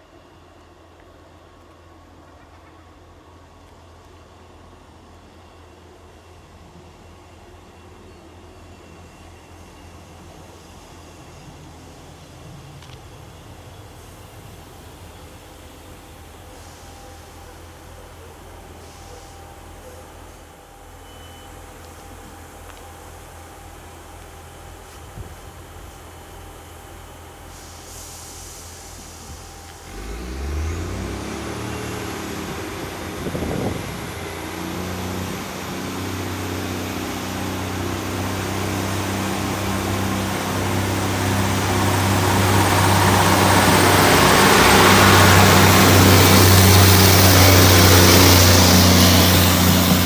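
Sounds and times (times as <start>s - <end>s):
diesel train engine: 0.0s - 50.0s
rail noise: 5.3s - 50.0s
rising high whine: 29.9s - 50.0s.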